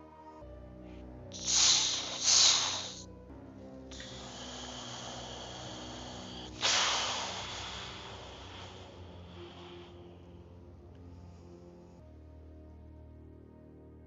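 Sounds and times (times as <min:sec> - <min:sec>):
background music: 0:00.0 - 0:14.0
loud hissing noise: 0:01.3 - 0:03.1, 0:03.9 - 0:10.0.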